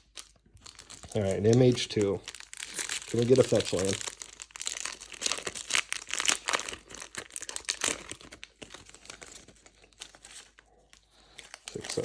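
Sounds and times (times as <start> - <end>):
foil wrapper tearing and crinkling: 0.0 - 12.0.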